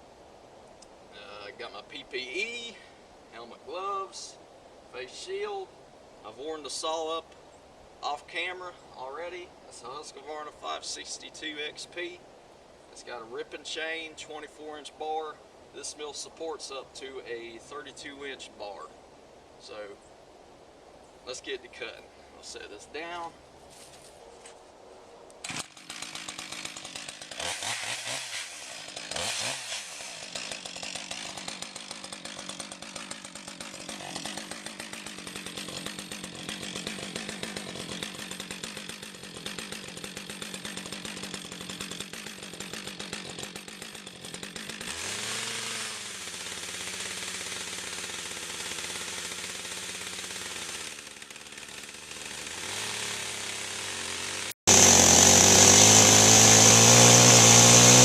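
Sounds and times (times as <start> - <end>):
chainsaw cutting through log: 25.4 - 58.0.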